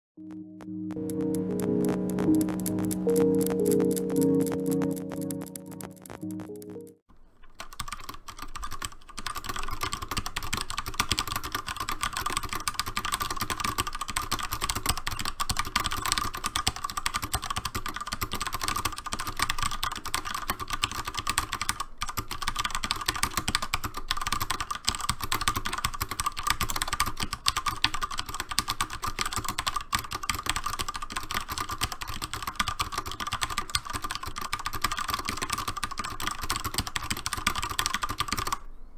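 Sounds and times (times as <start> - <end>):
fast mechanical keyboard typing: 7.5 - 38.6.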